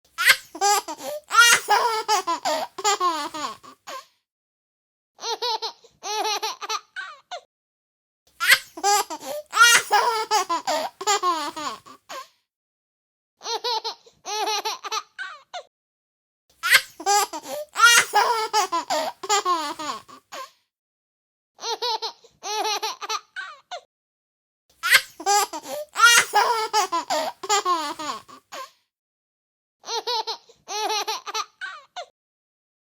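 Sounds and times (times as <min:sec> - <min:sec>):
baby giggling: 0:00.2 - 0:04.0, 0:08.4 - 0:12.0, 0:16.6 - 0:20.2, 0:24.8 - 0:28.4.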